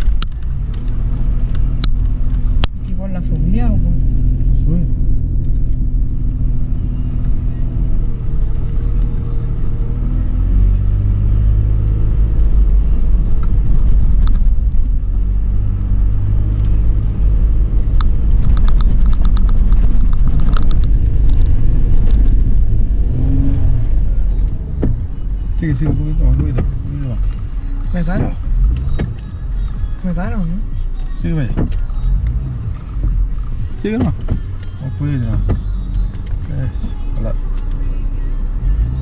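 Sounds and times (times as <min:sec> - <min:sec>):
engine rumbling under load: 0:00.0 - 0:39.0.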